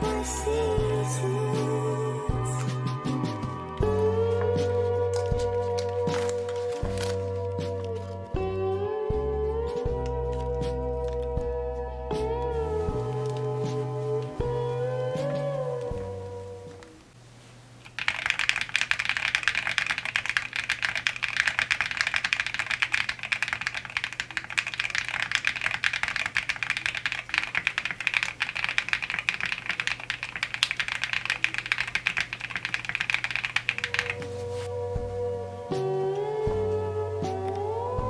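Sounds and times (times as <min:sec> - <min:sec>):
faint low hum: 0:00.0 - 0:38.0
mechanical keyboard typing: 0:05.1 - 0:07.2, 0:17.8 - 0:34.3.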